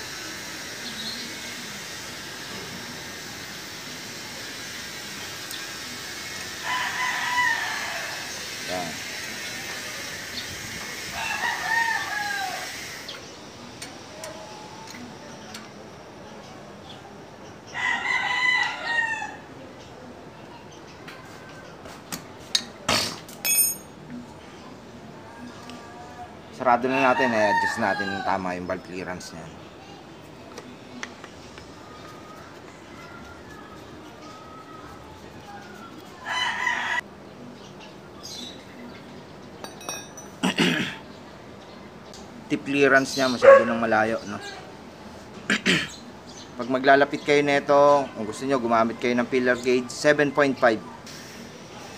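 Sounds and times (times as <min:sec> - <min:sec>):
rooster crowing: 0:06.6 - 0:08.4, 0:11.1 - 0:12.8, 0:17.8 - 0:19.5, 0:26.8 - 0:28.6, 0:35.8 - 0:37.0
metallic clink: 0:23.4 - 0:23.9, 0:39.6 - 0:40.4.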